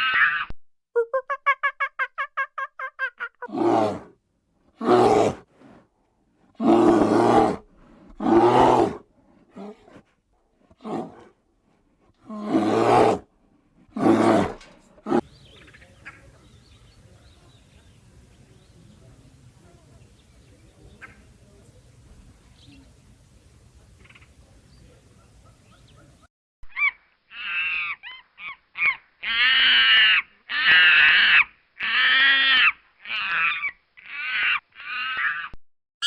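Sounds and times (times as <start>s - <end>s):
large animal roaring: 3.5s - 4.1s, 4.8s - 5.8s, 6.6s - 10.0s, 10.7s - 11.3s, 12.2s - 15.2s.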